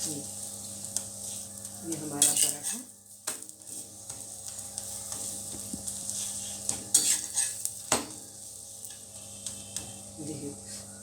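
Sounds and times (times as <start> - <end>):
flatbread sizzling in a pan: 0.0 - 11.0
utensil scraping a pan: 6.1 - 7.7.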